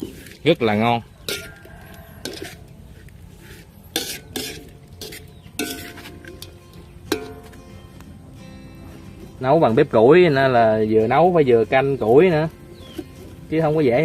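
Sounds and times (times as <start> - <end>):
metal spatula scraping pan: 0.0 - 7.6.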